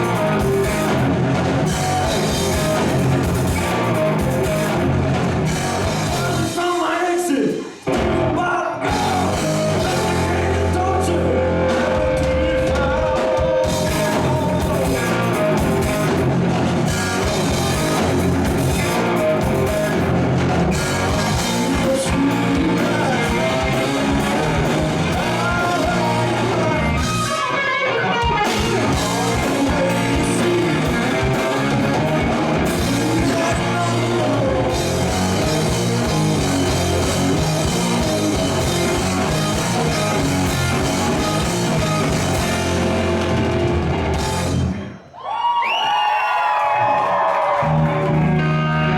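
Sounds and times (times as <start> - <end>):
electric guitar: 0.0 - 6.7, 7.6 - 45.1, 46.8 - 48.9
drum kit: 0.0 - 45.0
person singing: 5.9 - 7.7, 8.3 - 16.1, 21.0 - 42.8.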